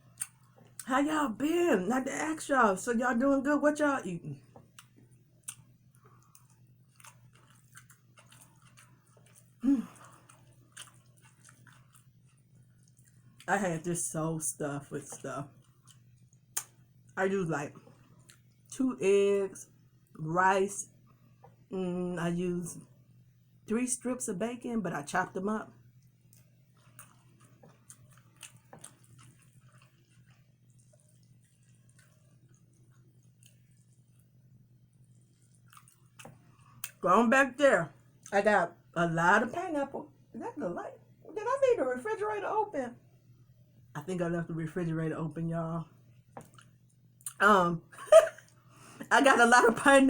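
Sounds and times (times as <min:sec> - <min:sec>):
soft chewing with mouth smacks: 0:00.0 - 0:00.9, 0:04.4 - 0:13.5, 0:15.0 - 0:18.7, 0:25.8 - 0:37.0, 0:38.0 - 0:38.4, 0:46.0 - 0:47.4
low steady hum: 0:00.0 - 0:50.0.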